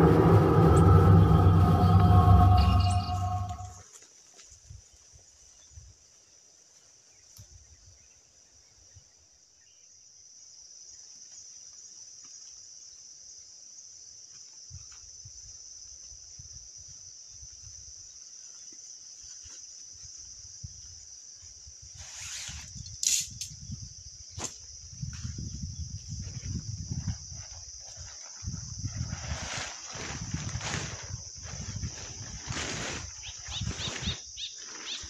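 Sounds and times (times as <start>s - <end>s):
crickets chirping: 0.0s - 3.8s, 4.8s - 35.0s
faint low rumbling: 0.0s - 3.8s.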